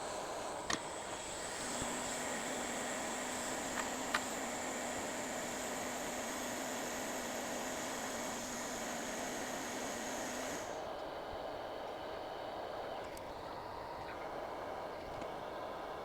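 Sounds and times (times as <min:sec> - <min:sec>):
hot air station hissing: 0:00.0 - 0:10.9.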